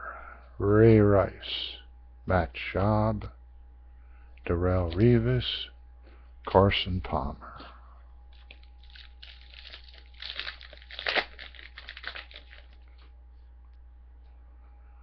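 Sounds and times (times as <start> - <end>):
card pack wrapper crinkling: 8.3 - 13.1.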